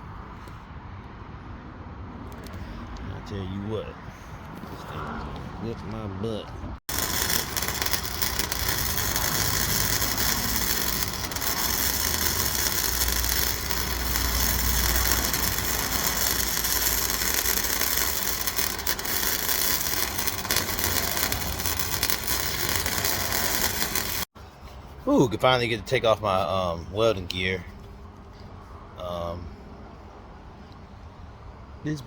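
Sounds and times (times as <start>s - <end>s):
arc welding crackling hiss: 6.9s - 24.3s.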